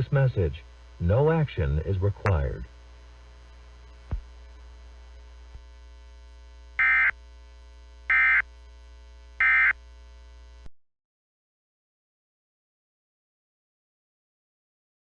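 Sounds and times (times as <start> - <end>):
mains hum: 0.0 - 10.7
short digital data bursts: 6.8 - 7.2, 8.1 - 8.4, 9.4 - 9.8.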